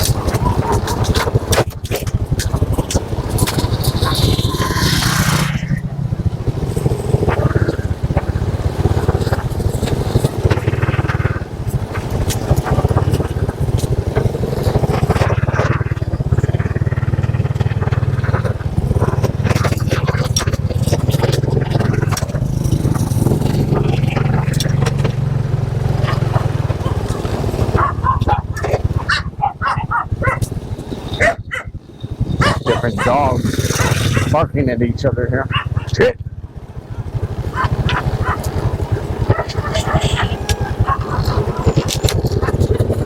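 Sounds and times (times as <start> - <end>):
knocks and rattles: 0.0 - 34.4
motorcycle engine running: 0.0 - 43.0.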